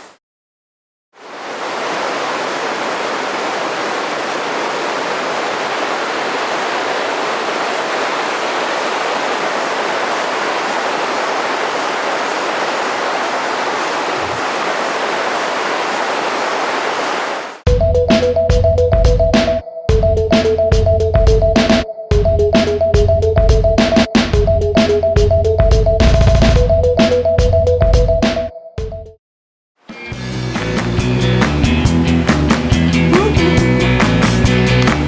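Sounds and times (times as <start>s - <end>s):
mountain stream rushing: 1.2s - 17.6s, 30.3s - 35.0s.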